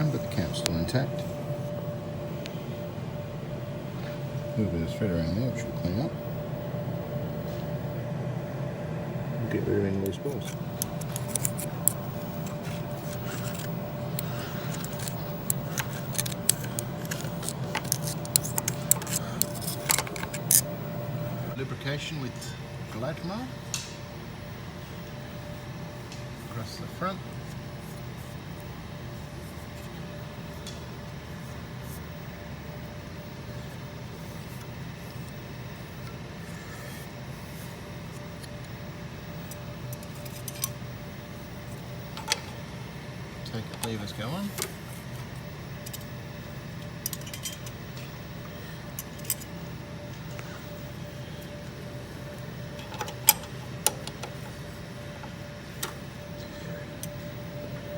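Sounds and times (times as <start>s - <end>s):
faint steady tone: 0.0s - 43.9s
steady low hum: 0.0s - 57.9s.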